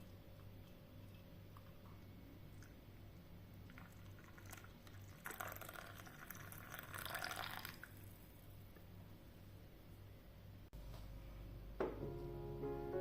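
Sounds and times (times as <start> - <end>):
water pouring: 3.6 - 8.2.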